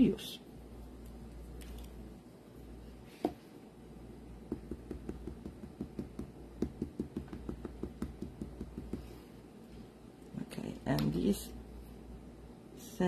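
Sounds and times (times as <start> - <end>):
knock on tabletop: 4.5 - 9.1.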